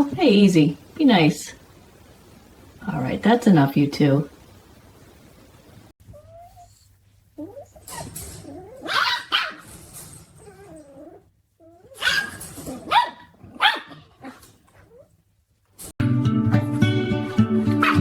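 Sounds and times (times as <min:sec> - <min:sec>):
dog whining: 0:06.1 - 0:09.6, 0:10.3 - 0:15.2
dog barking: 0:08.8 - 0:09.6, 0:12.0 - 0:14.4, 0:17.8 - 0:18.0
music: 0:16.0 - 0:18.0.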